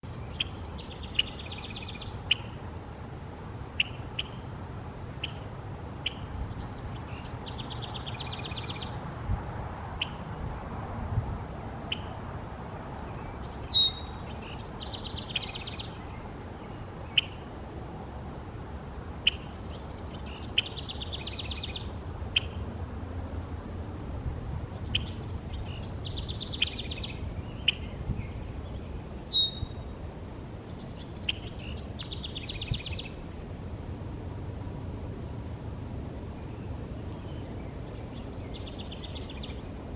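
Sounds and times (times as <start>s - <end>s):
bird singing buzzy trill: 13.5s - 16.0s, 24.9s - 29.9s.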